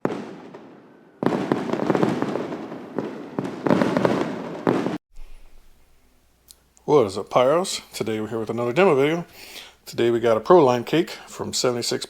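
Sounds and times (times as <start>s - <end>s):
fireworks firing: 0.0s - 5.8s
fireworks crackle: 0.0s - 6.0s.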